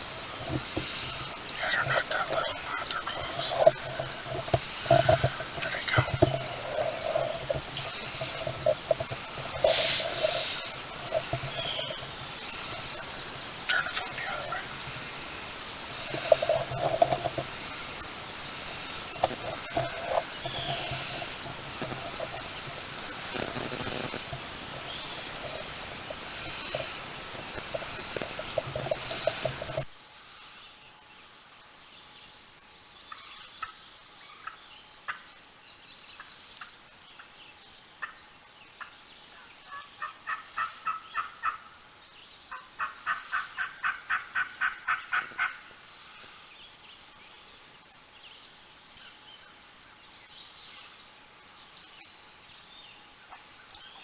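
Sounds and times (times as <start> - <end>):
faint songbird chirps: 0.0 - 31.2
turkey yelps: 39.7 - 41.7, 42.5 - 45.7.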